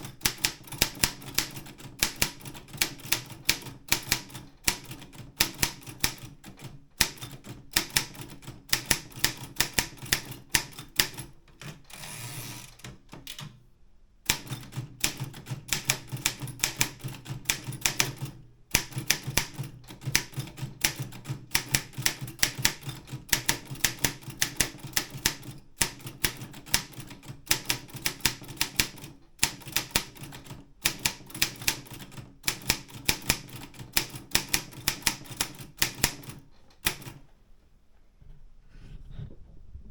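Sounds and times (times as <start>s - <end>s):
brief sliding noise: 38.6s - 39.6s.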